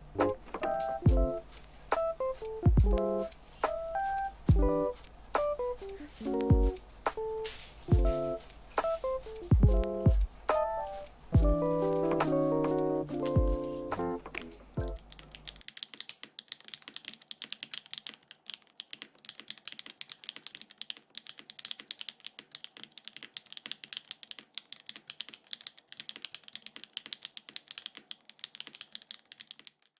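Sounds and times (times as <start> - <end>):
background music: 0.0 - 15.0
fast mechanical keyboard typing: 14.8 - 29.9.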